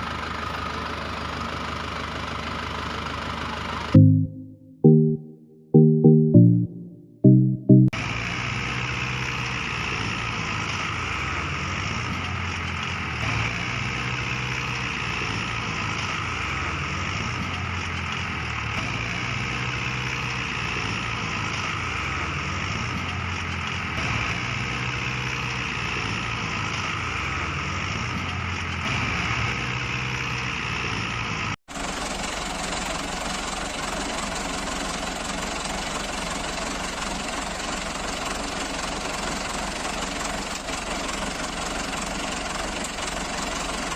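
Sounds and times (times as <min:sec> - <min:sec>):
tractor engine running: 0:00.0 - 0:04.3, 0:06.4 - 0:43.9.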